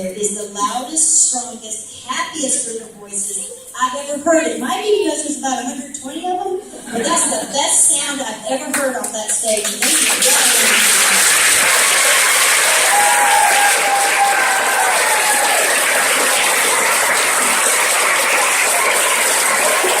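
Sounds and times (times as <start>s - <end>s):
audience applauding: 9.6s - 20.0s.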